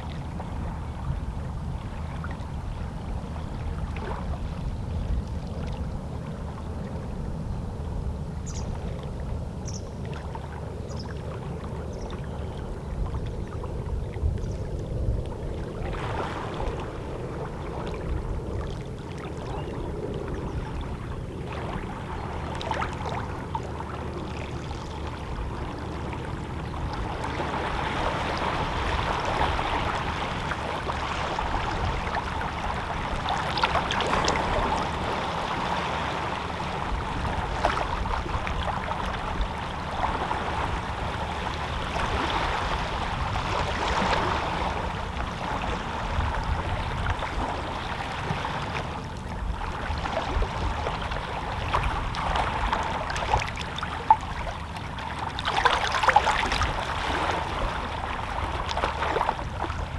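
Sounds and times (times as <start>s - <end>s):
seabird calls: 19.2s - 21.2s.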